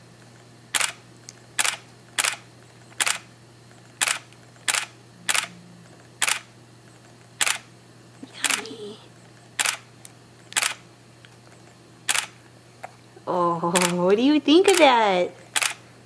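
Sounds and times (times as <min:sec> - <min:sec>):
camera shutter clicking: 0:00.8 - 0:01.0, 0:01.6 - 0:02.4, 0:03.0 - 0:03.3, 0:04.0 - 0:05.5, 0:06.2 - 0:06.5, 0:07.4 - 0:07.7, 0:09.6 - 0:09.8, 0:10.6 - 0:10.8, 0:12.1 - 0:12.4, 0:13.8 - 0:14.0, 0:15.5 - 0:15.8.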